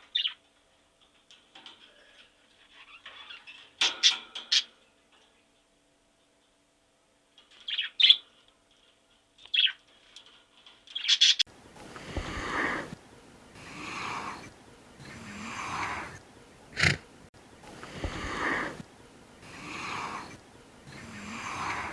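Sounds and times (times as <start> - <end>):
high chirping animal calls: 0.0 - 0.4, 7.6 - 8.2, 9.4 - 9.8, 10.9 - 11.4
animal breathy snorts: 11.9 - 13.0, 13.6 - 16.2, 16.8 - 17.0, 17.7 - 18.8, 19.4 - 21.9.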